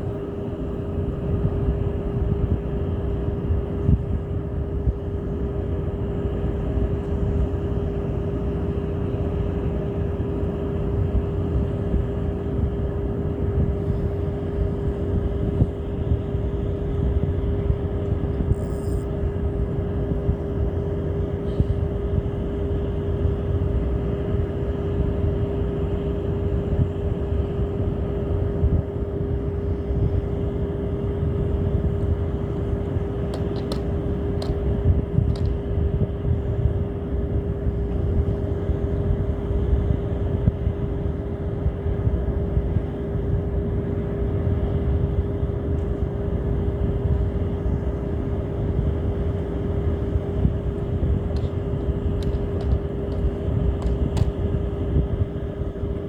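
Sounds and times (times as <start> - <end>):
motor running: 18.5 - 19.1.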